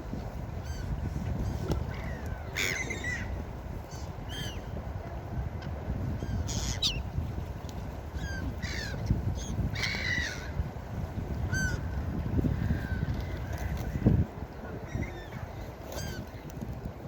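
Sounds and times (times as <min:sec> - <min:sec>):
seagulls calling: 0:00.6 - 0:04.7, 0:06.2 - 0:07.1, 0:08.2 - 0:10.6.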